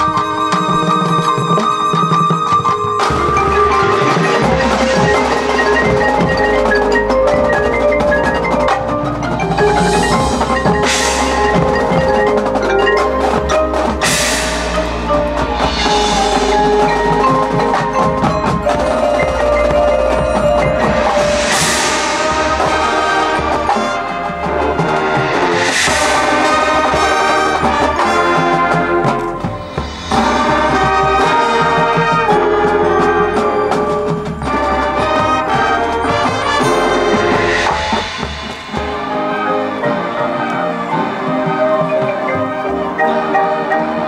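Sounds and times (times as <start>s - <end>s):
mallet percussion melody: 0.0s - 44.0s
sustained low tones: 3.1s - 27.6s
cymbal washes: 9.8s - 19.0s, 20.1s - 32.6s, 36.0s - 40.9s.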